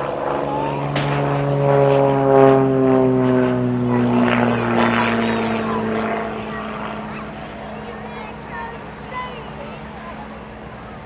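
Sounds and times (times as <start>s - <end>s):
biplane engine and propeller droning: 0.0s - 11.0s
sharp click: 0.9s - 1.3s.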